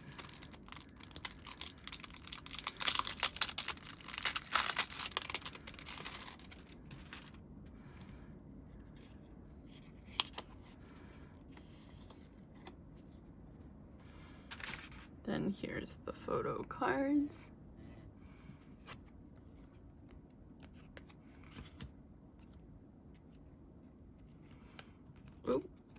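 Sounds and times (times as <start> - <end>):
packaging crinkling and tearing: 0.0 - 7.4.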